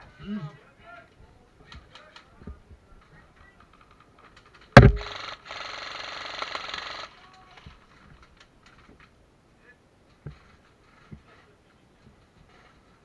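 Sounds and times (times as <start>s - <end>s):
loud sharp crack: 4.8s - 5.4s
airsoft gun firing full auto: 4.8s - 7.4s.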